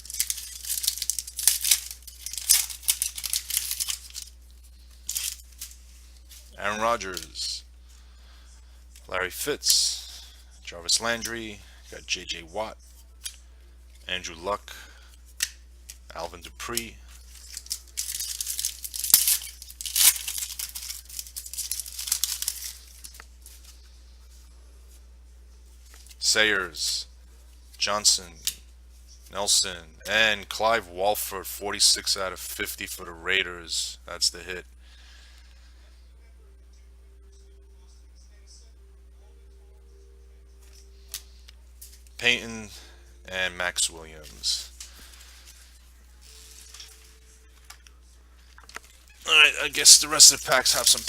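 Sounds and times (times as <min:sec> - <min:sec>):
foil wrapper tearing and crinkling: 0:00.0 - 0:04.3, 0:17.3 - 0:23.2, 0:49.6 - 0:51.0
wrapper rustling: 0:00.0 - 0:07.2, 0:17.2 - 0:23.8, 0:44.2 - 0:47.8, 0:48.5 - 0:51.0.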